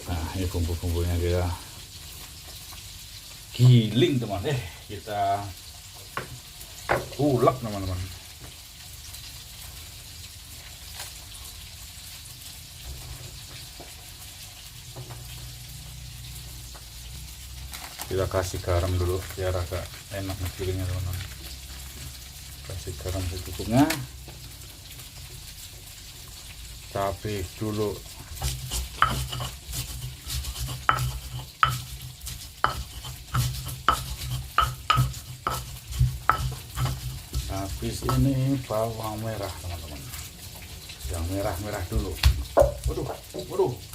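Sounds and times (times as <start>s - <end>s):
fish sizzling in hot oil: 0.0s - 43.9s
oil popping: 19.0s - 39.4s, 41.9s - 43.9s
pestle scraping in mortar: 28.2s - 38.5s
pestle knocking: 28.4s - 38.3s, 42.2s - 43.4s.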